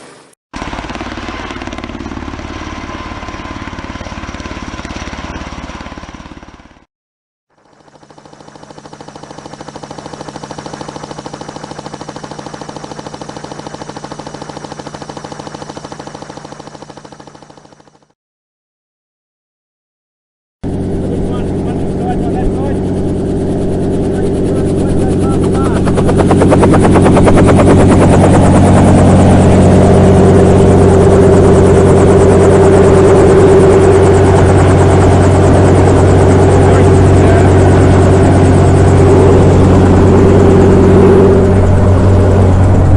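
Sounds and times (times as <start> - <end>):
helicopter engine whine: 0.0 - 6.9, 7.5 - 18.1, 20.6 - 42.9
helicopter rotor chopping: 0.0 - 6.9, 7.5 - 18.2, 20.6 - 42.9
humming tone: 20.7 - 42.9.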